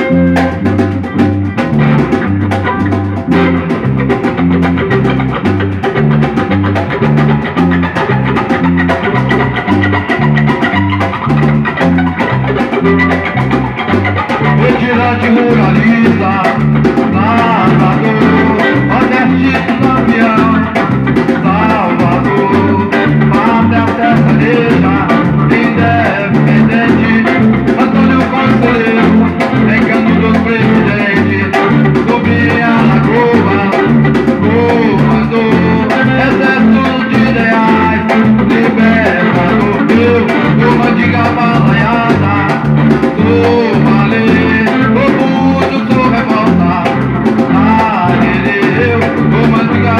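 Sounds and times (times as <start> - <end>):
drum beat: 0.0 - 49.9
guitar: 0.0 - 49.9.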